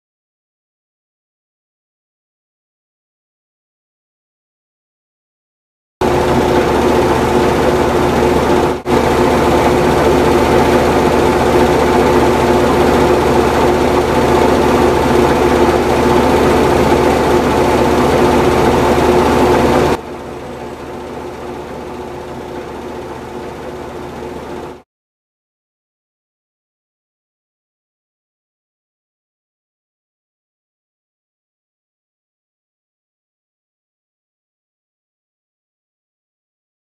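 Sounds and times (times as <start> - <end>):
metal lathe running and cutting: 6.0 - 24.8.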